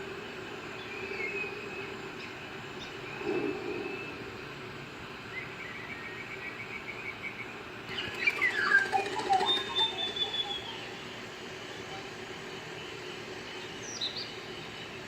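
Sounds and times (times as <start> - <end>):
steady background hum: 0.0 - 15.0
birds calling: 0.8 - 15.0.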